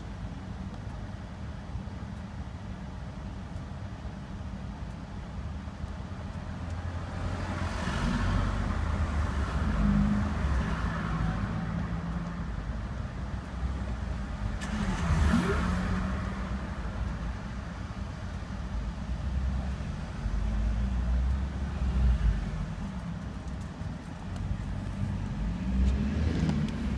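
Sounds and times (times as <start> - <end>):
car engine revving: 14.4 - 17.1, 24.5 - 26.9.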